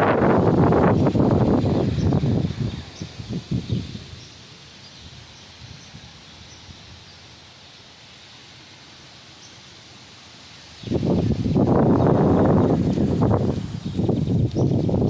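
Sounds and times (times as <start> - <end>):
wind buffeting microphone: 0.0 - 4.4, 10.8 - 15.0
faint steady hiss: 0.0 - 15.0.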